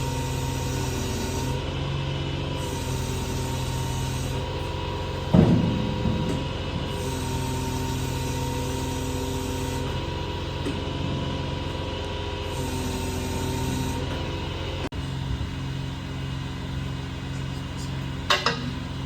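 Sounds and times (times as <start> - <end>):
engine droning steadily: 0.0 - 19.0
mechanical hum: 0.0 - 19.0
heavy metal clunk: 5.2 - 7.0.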